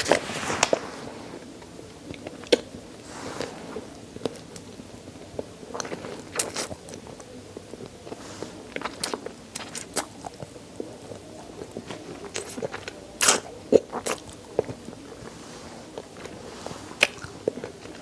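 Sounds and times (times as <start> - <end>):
chewing and crunching bones: 1.4 - 18.0
wet mouth clicks: 15.9 - 18.0.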